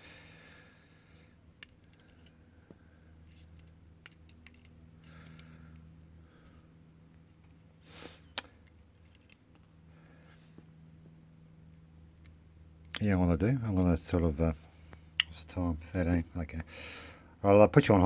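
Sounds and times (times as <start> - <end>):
metal lock parts clicking: 1.6 - 2.4, 3.2 - 7.6, 8.6 - 9.8, 11.7 - 14.0
metal scrape: 1.8 - 2.4.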